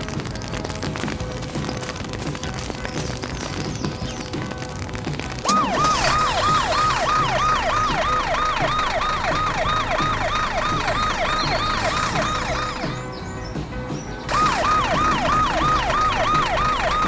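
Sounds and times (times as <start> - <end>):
siren yelping: 5.4 - 13.1, 14.3 - 17.0.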